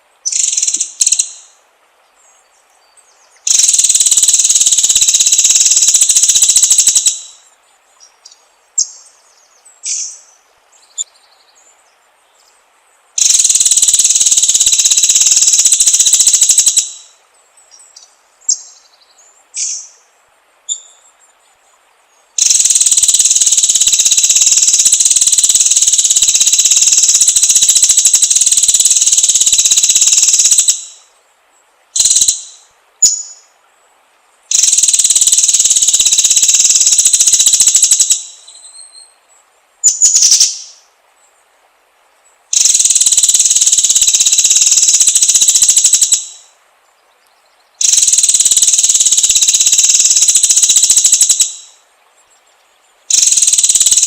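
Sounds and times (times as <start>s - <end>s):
bird buzzing trills: 0.2s - 1.6s, 3.4s - 7.4s, 13.2s - 17.2s, 22.4s - 31.1s, 34.5s - 38.5s, 47.8s - 51.8s, 53.1s - 54.0s
bird chirps: 0.2s - 1.6s, 2.2s - 12.6s, 13.2s - 20.0s, 20.7s - 21.4s, 22.1s - 31.1s, 32.0s - 33.5s, 34.5s - 39.2s, 39.8s - 40.9s, 42.5s - 54.0s.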